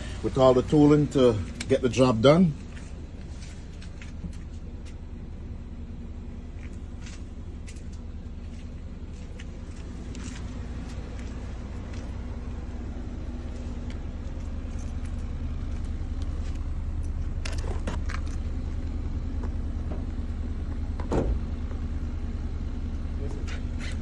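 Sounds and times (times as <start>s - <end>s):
vehicle engine idling: 0.0s - 24.0s
thump: 21.0s - 21.5s.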